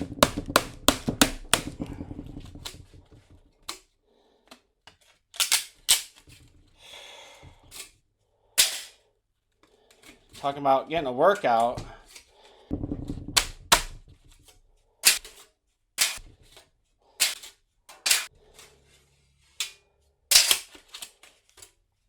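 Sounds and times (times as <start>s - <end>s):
hatchet striking steel plates: 0.0s - 3.3s.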